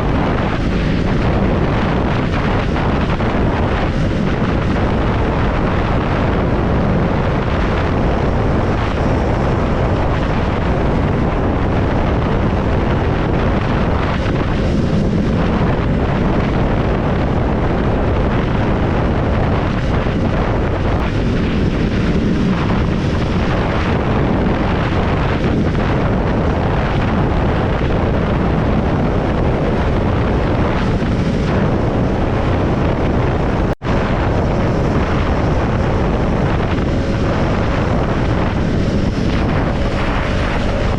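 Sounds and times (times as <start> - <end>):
motorcycle engine running: 0.0 - 40.9
wind rushing over microphone: 0.0 - 40.9.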